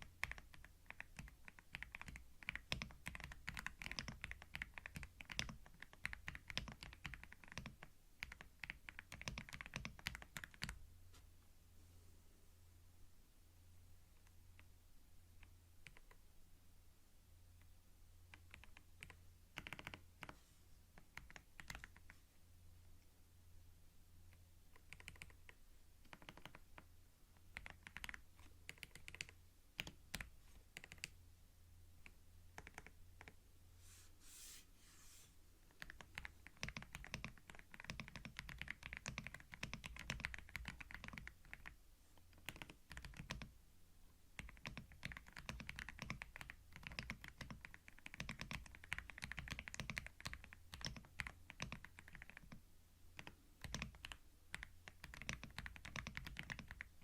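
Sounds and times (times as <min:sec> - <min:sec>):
computer keyboard typing: 0:00.0 - 0:10.8, 0:15.8 - 0:16.2, 0:18.3 - 0:20.4, 0:21.0 - 0:22.2, 0:24.7 - 0:26.9, 0:27.5 - 0:31.2, 0:32.0 - 0:33.4, 0:35.7 - 0:43.5, 0:44.4 - 0:57.0
soft hiss: 0:10.2 - 0:38.2.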